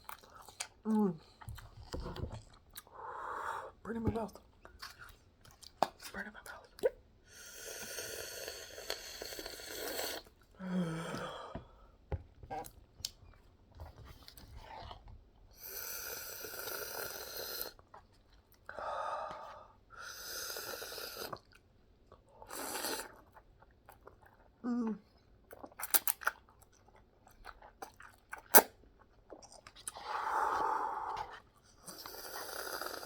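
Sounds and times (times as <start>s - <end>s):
person chewing noodles: 0.0s - 3.7s, 7.4s - 11.8s, 20.2s - 24.6s, 25.2s - 33.0s.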